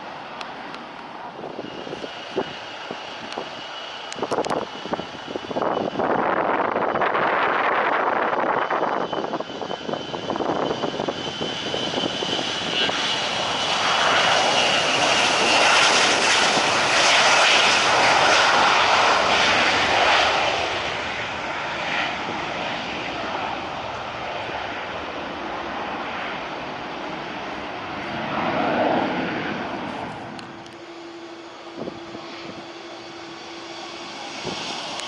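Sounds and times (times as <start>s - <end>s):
jet airliner engines passing: 0.0s - 35.0s.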